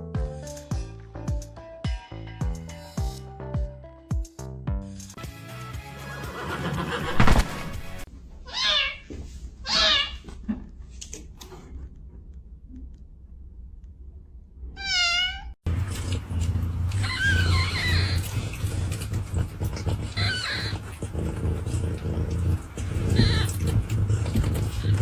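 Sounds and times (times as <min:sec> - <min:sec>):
cat meowing: 0:08.5 - 0:09.1, 0:09.7 - 0:10.2, 0:14.8 - 0:25.0.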